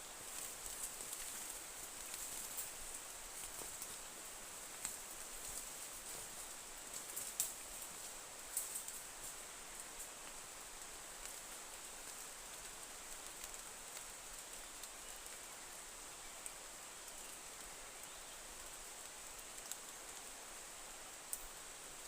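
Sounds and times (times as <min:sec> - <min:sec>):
faint ticks: 0:04.7 - 0:15.7, 0:16.4 - 0:20.3, 0:21.1 - 0:21.6.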